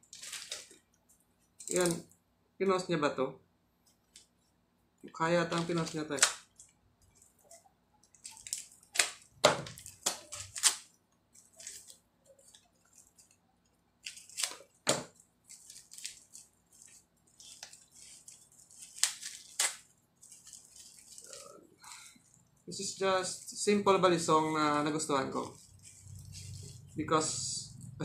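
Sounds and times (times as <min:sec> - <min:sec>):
packaging crackling and snapping: 0:00.0 - 0:00.9, 0:05.5 - 0:07.4, 0:08.0 - 0:22.4
packaging rustling: 0:00.0 - 0:02.1, 0:05.4 - 0:27.0.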